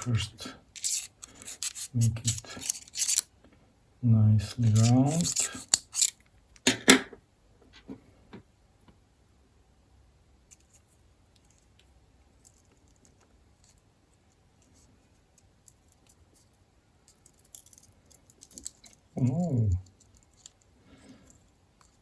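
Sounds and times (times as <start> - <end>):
small metal parts clicking: 0.8 - 3.3, 4.5 - 6.3, 17.1 - 22.0.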